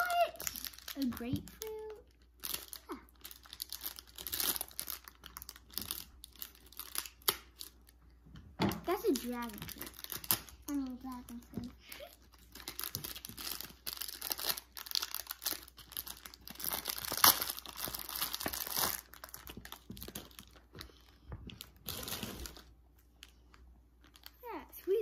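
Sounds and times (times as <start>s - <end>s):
plastic packaging crinkling and tearing: 0.0s - 8.0s, 8.8s - 25.0s.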